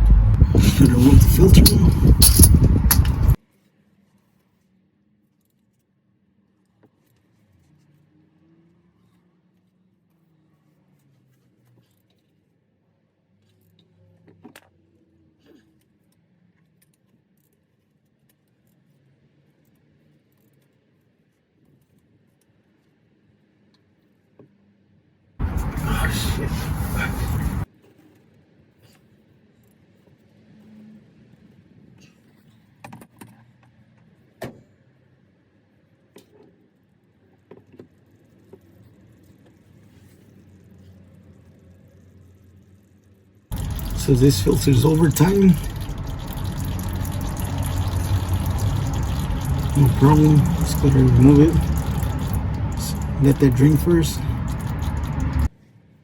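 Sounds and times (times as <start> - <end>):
tools knocking and clicking: 0.5 - 3.4.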